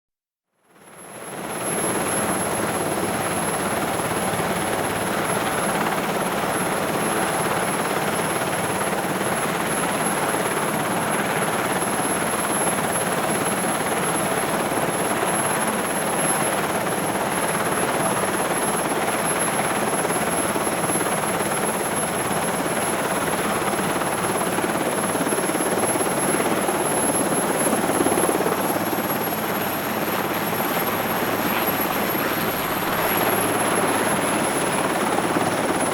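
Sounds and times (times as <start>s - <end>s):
helicopter engine roar: 1.1s - 35.9s
high turbine whine: 23.4s - 35.9s.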